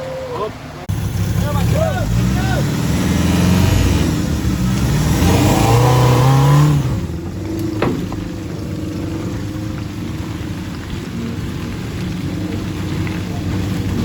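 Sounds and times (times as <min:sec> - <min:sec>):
vehicle engine revving hard: 0:00.9 - 0:09.7.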